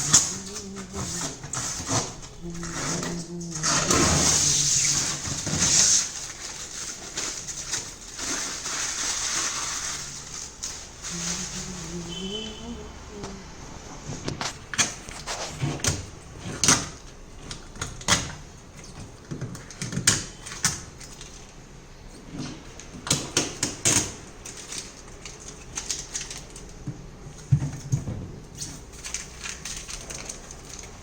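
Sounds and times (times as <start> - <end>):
refrigerator shelves clicking and knocking: 22.3 - 31.0.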